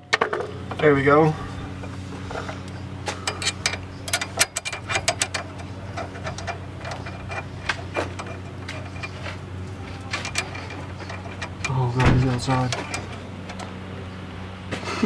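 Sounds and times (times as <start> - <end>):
steady low hum: 0.0 - 14.8
hand tools clinking on metal: 0.1 - 13.8.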